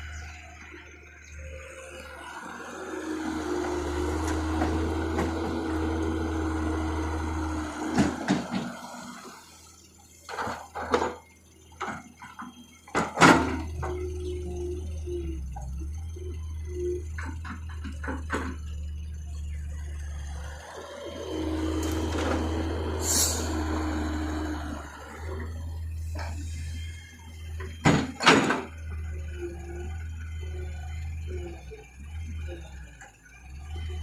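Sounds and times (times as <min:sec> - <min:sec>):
engine humming: 0:00.0 - 0:34.0
knocks and clunks: 0:03.6 - 0:09.2, 0:10.3 - 0:14.2, 0:17.0 - 0:18.8, 0:27.5 - 0:29.1.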